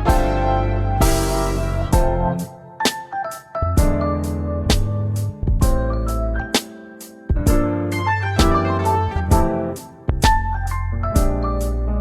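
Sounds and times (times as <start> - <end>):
steady drum beat: 0.0 - 0.4, 1.0 - 2.5, 5.5 - 5.9, 7.3 - 10.6
keyboard and bass music: 0.0 - 12.0.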